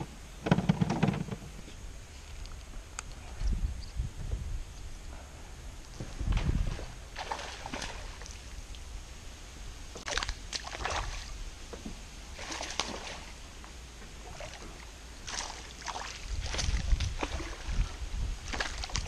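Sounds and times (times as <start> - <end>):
water splashing: 6.5 - 8.9, 10.0 - 11.5, 12.2 - 13.6, 14.2 - 19.0.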